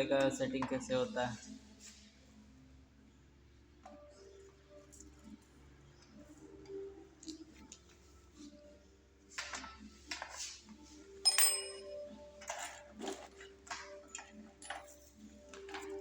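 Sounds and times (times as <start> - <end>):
ringing metallic clink: 11.2 - 12.0
metal tools clinking: 11.2 - 16.0.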